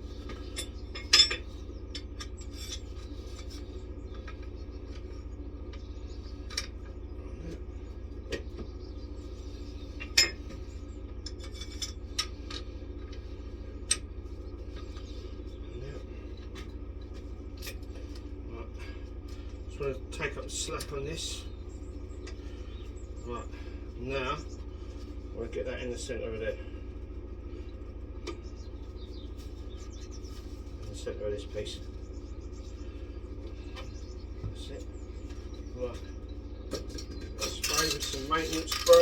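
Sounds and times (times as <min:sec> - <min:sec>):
steady low hum: 0:00.0 - 0:39.0
metal tool parts clinking: 0:36.7 - 0:39.0.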